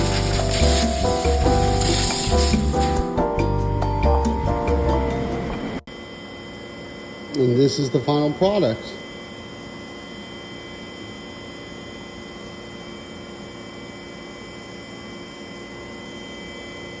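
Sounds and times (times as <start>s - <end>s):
machine hum and hiss: 0.0s - 3.2s.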